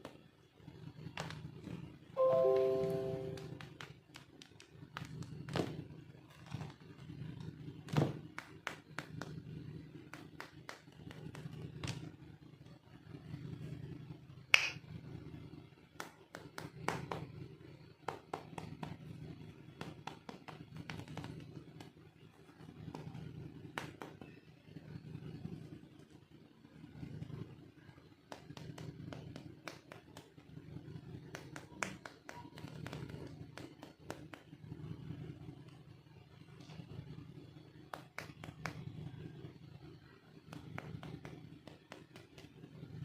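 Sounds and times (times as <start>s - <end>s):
low steady hum: 0.9s - 4.0s.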